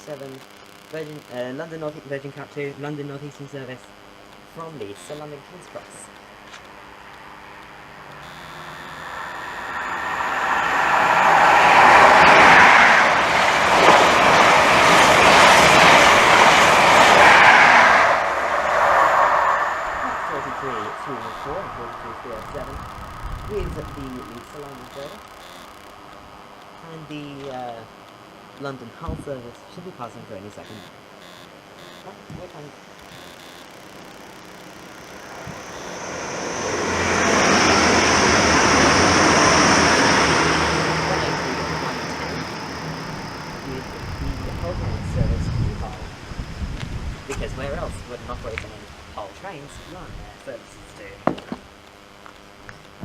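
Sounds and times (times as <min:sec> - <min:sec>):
high whine: 0:00.0 - 0:53.0
train passing at speed: 0:06.9 - 0:25.1, 0:35.0 - 0:48.6
low engine hum: 0:35.1 - 0:47.4.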